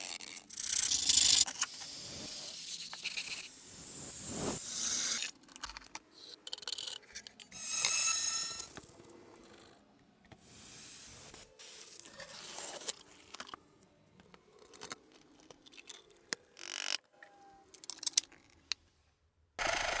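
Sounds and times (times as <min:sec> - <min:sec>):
small tools clicking and tapping: 0:05.2 - 0:08.9, 0:14.2 - 0:18.8.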